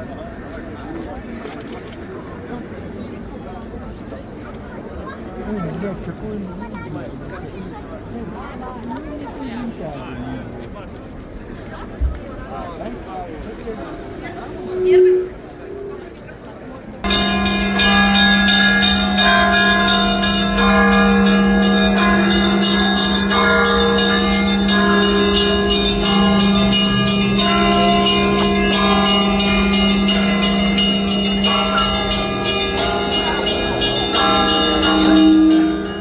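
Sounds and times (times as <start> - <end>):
church bells ringing a peal: 12.9 - 15.4, 17.0 - 36.0
small bells striking: 17.0 - 36.0.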